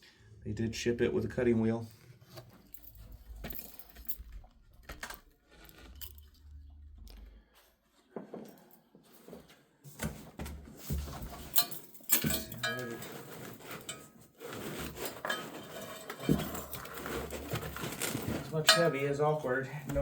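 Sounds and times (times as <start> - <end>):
metal machine parts clattering: 2.7 - 6.6, 11.4 - 14.1, 15.0 - 19.3.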